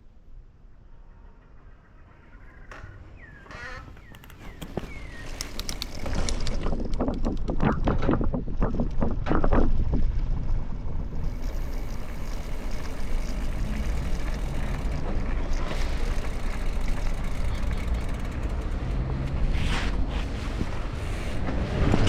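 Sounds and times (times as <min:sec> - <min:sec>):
quick run of short sounds: 0:04.1 - 0:10.1.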